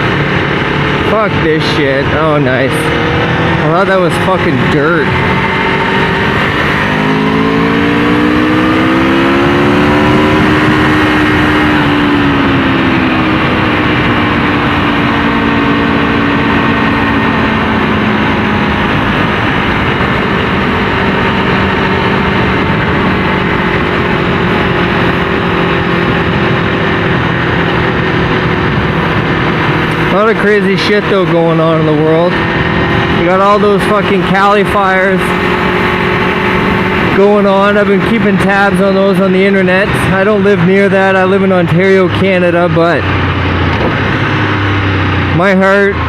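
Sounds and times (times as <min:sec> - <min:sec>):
motorcycle engine pulling hard: 0:00.0 - 0:46.0
wind and road noise: 0:00.0 - 0:46.0.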